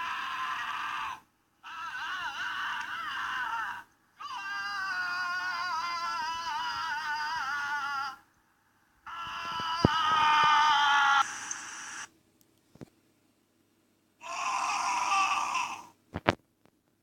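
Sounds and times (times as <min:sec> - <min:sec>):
person screaming in high wails: 0:00.0 - 0:08.2, 0:09.1 - 0:11.3, 0:14.2 - 0:15.9.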